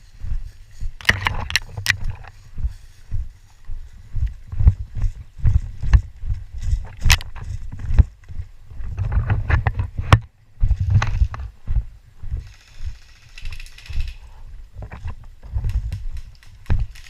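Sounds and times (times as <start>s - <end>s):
uneven footsteps: 0.0s - 17.0s
sharp clicks and knocks: 1.0s - 2.3s, 6.9s - 8.1s, 8.9s - 11.5s.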